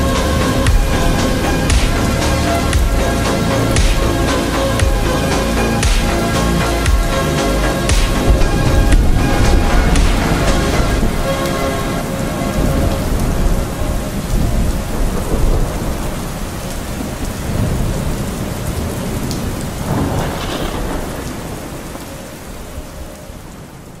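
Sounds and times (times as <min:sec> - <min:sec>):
low rolling thunder: 0:00.0 - 0:06.3, 0:07.9 - 0:24.0
music reverb tail: 0:00.0 - 0:15.8
steady rainfall: 0:00.0 - 0:24.0.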